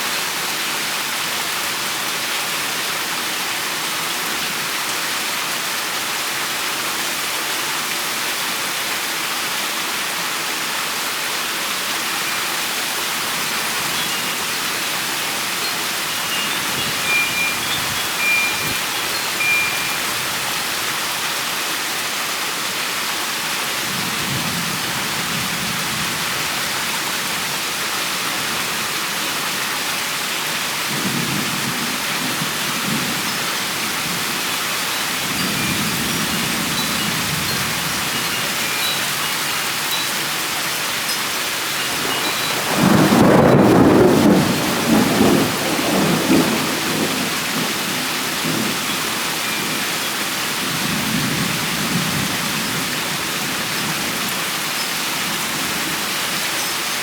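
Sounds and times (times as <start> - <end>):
rain hissing: 11.1 - 57.0
short high chirps: 16.1 - 20.2
thunder rumbling: 41.8 - 49.2.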